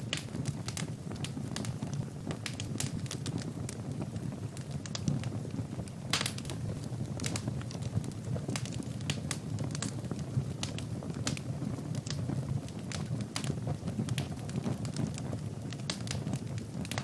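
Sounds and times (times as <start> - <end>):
low rumble of flames: 0.0 - 17.0
wood fire crackling and popping: 0.0 - 17.0.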